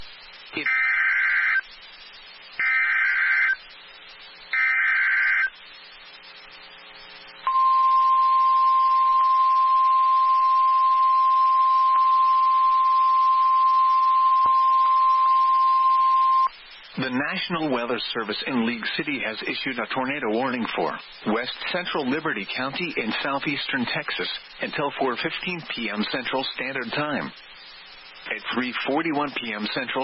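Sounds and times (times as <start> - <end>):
steady single-pitch alert tone: 7.4 - 16.5.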